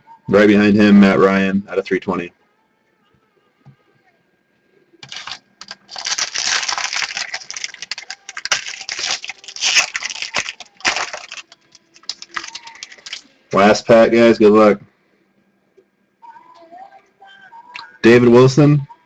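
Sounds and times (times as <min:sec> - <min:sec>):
cards and plastic packaging crinkling: 0:05.0 - 0:13.3.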